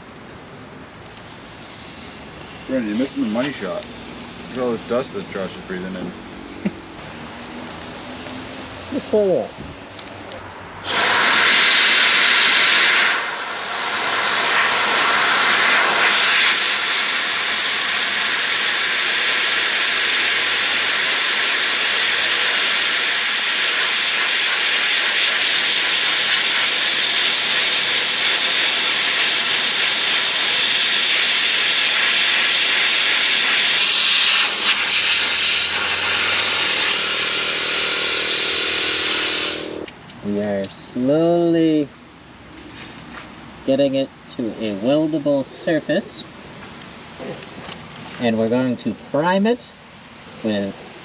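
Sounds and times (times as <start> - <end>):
sandblaster hissing: 1.2 - 5.6, 10.8 - 39.9.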